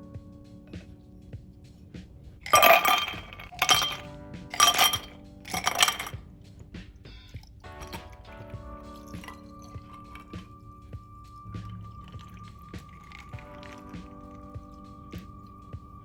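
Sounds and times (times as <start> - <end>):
background music: 0.0 - 16.0
dishware clinking: 2.5 - 6.2.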